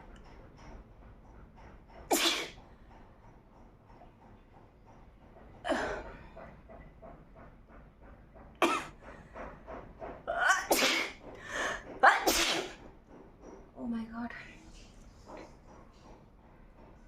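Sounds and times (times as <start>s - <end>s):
woman sneezing: 10.4s - 11.2s, 12.0s - 12.8s.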